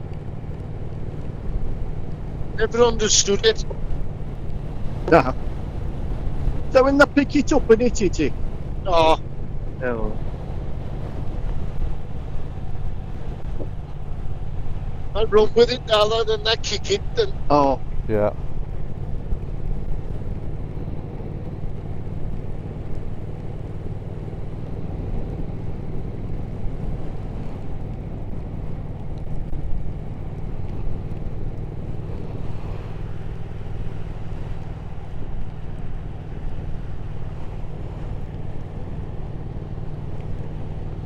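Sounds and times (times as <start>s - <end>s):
motorcycle engine cruising: 0.0s - 41.0s
wind and road noise: 0.0s - 41.0s.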